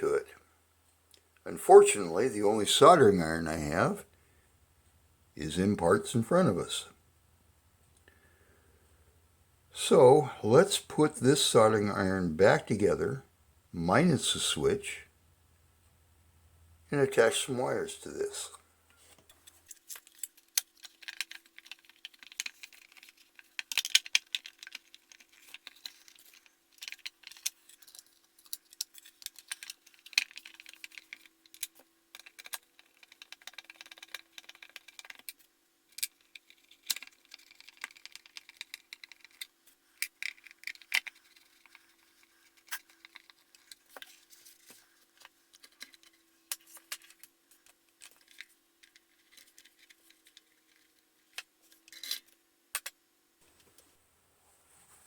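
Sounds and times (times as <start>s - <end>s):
small parts clicking and rattling: 19.2s - 53.0s.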